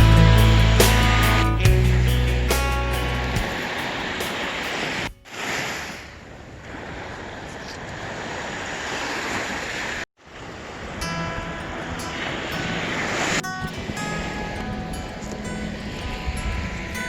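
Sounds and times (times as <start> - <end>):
waves washing onto shore: 3.1 - 17.0
wind on microphone: 10.6 - 17.0.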